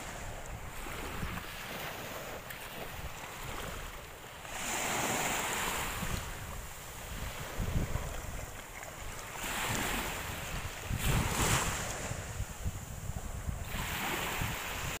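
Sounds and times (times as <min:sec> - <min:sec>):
sea waves breaking on beach: 0:00.0 - 0:15.0
wind buffeting microphone: 0:00.0 - 0:15.0.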